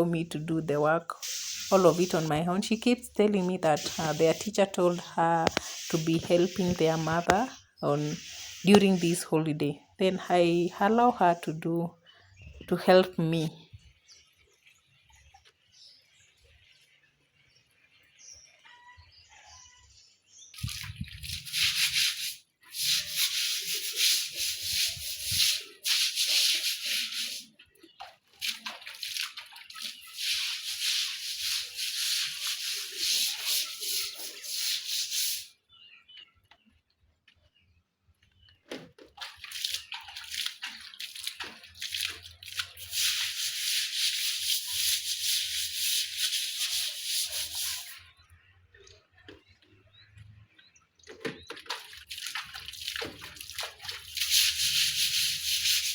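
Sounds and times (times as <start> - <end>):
brush scrubbing floor: 1.2 - 2.4, 3.6 - 9.3, 21.2 - 27.5, 28.4 - 35.5, 40.7 - 48.0, 52.5 - 55.9.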